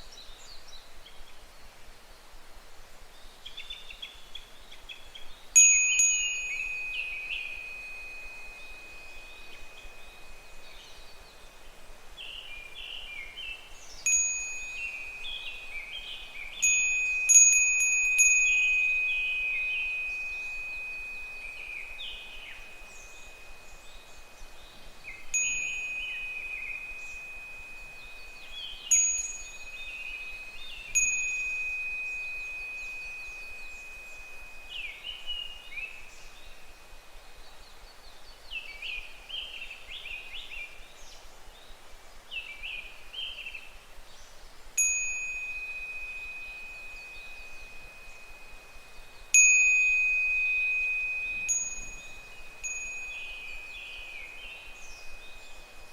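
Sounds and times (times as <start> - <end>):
cicadas calling: 3.4 - 55.9
wind chime ringing: 5.6 - 11.0, 14.0 - 15.7, 16.4 - 37.0, 44.8 - 55.9.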